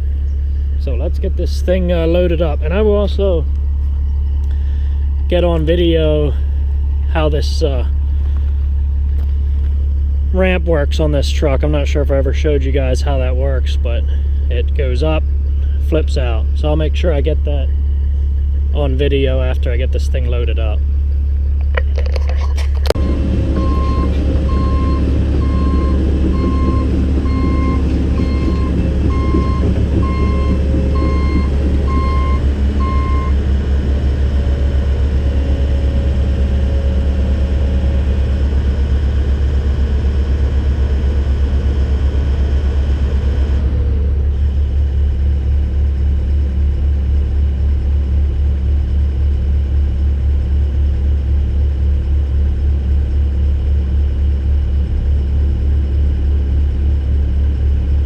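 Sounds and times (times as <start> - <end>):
heavy diesel engine rumbling: 0.0 - 58.0
backup alarm beeping: 23.0 - 33.5.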